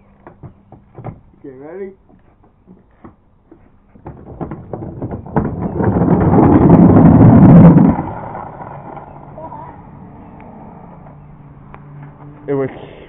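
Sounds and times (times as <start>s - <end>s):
wheels rolling down a ramp: 0.3s - 10.7s.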